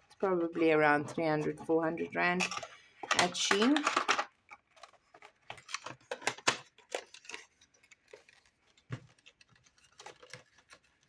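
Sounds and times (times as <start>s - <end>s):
packaging clicks and rustles: 2.4s - 11.0s.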